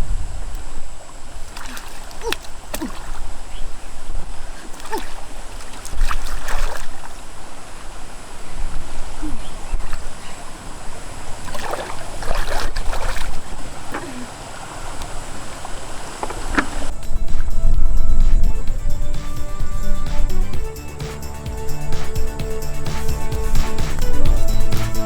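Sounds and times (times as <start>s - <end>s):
water splashing and sloshing: 0.0s - 18.8s.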